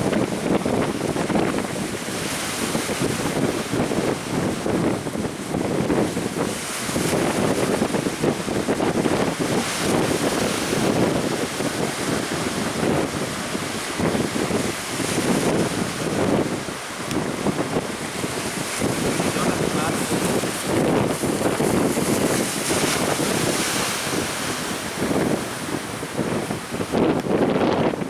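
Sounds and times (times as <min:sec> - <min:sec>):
sea surf rushing: 0:00.0 - 0:28.0
wind buffeting microphone: 0:00.0 - 0:28.0.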